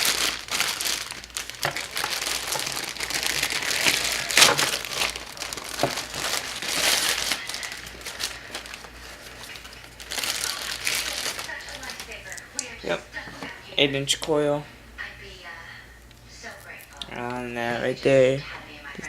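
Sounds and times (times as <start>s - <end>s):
plastic packaging crinkling: 0.0s - 12.4s.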